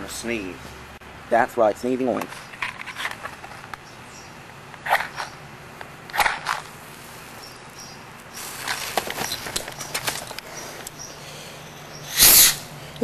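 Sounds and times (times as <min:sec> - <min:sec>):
firework fuse hissing and crackling: 0:08.4 - 0:09.0, 0:12.0 - 0:12.7.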